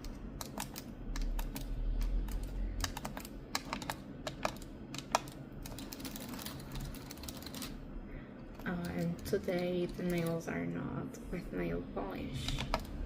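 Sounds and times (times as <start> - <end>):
fingernails typing on keyboard: 0.0 - 7.8, 8.5 - 10.4, 12.4 - 13.0.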